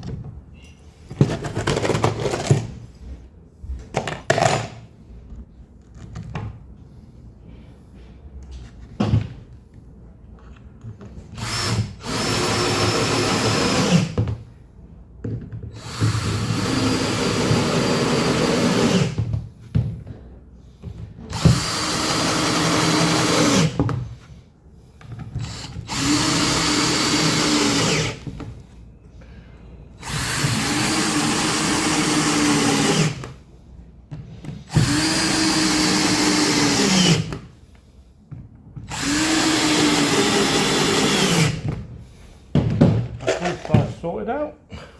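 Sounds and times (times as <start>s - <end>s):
power drill bursts: 11.4s - 14.2s, 15.8s - 19.2s, 21.3s - 23.8s, 25.4s - 28.3s, 30.0s - 33.3s, 34.7s - 37.4s, 38.9s - 41.7s.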